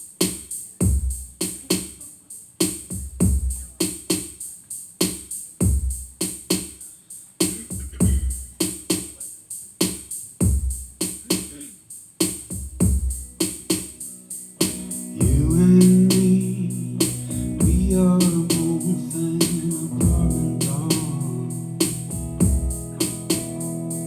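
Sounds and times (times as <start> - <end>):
hi-hat ticks: 0.0 - 24.0
kick drum thumps: 0.8 - 1.2, 2.9 - 3.7, 5.6 - 6.1, 7.6 - 8.5, 10.4 - 11.0, 12.4 - 13.3, 15.2 - 15.6, 17.4 - 18.2, 20.0 - 20.5, 21.9 - 22.9.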